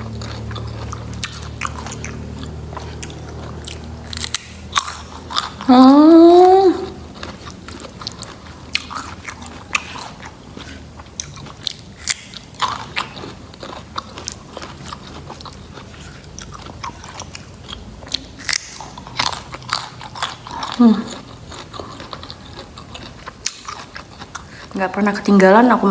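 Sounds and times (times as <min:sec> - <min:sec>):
loud rising hum: 0:00.0 - 0:07.7
crunchy chewing: 0:00.0 - 0:24.8.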